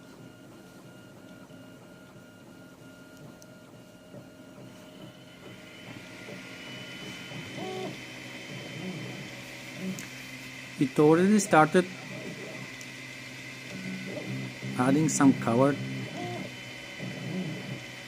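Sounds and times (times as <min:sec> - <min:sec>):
printer stepper motors whining: 0:00.0 - 0:18.0.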